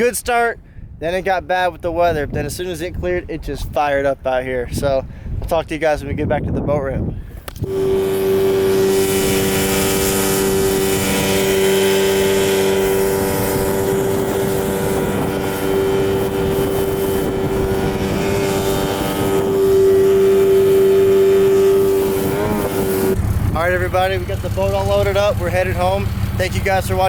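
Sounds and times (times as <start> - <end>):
wind buffeting microphone: 0.0 - 27.0
outboard motor running: 7.5 - 27.0.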